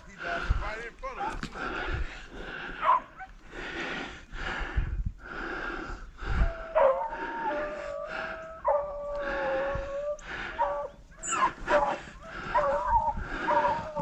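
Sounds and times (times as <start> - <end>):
rhythmic rustling or breathing: 0.0 - 14.0
beagles baying: 2.4 - 3.5, 6.2 - 14.0.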